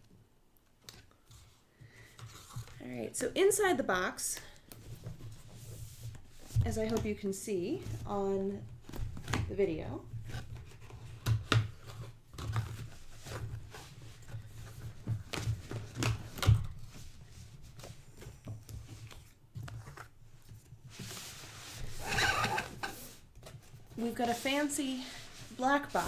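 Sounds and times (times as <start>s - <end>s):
cardboard surfaces scraping: 20.8s - 26.0s.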